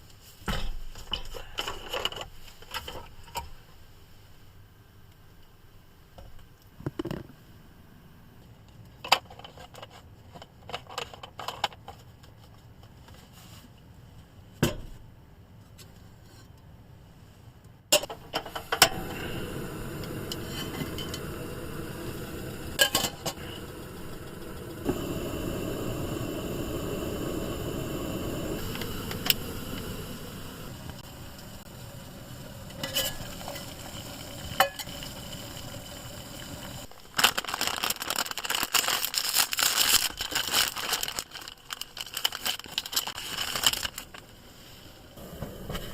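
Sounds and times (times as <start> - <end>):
rustling and crinkling: 8.7 - 14.4, 36.9 - 45.0
steady hiss: 18.0 - 45.9.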